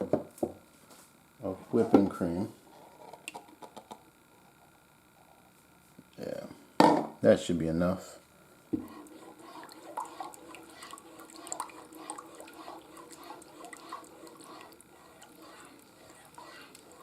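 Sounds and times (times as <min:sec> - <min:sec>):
low steady hum: 0:00.0 - 0:17.0
knock: 0:06.8 - 0:07.1
sauce bubbling and popping: 0:08.8 - 0:17.0.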